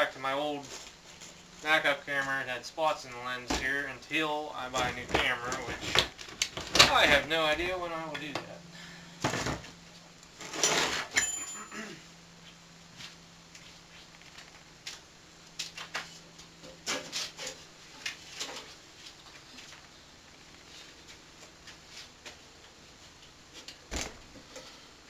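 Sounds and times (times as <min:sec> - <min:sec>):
faint steady hum: 0:00.0 - 0:25.0.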